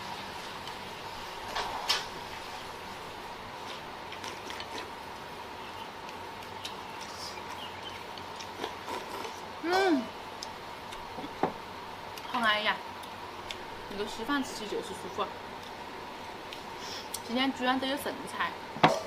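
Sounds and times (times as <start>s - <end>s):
steady faint hum: 0.0s - 19.0s.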